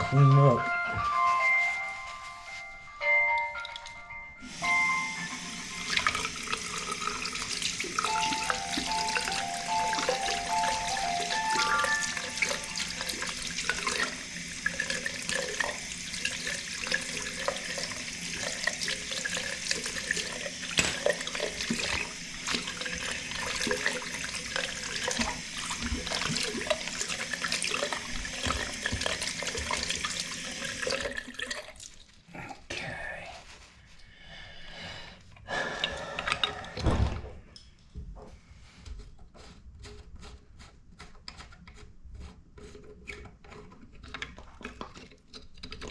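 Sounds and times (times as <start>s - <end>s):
faucet water running into sink: 3.6s - 32.2s.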